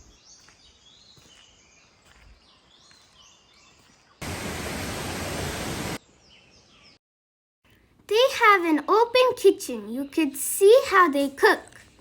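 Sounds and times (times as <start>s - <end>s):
birds chirping: 0.0s - 7.0s
loud rushing noise: 4.2s - 6.0s.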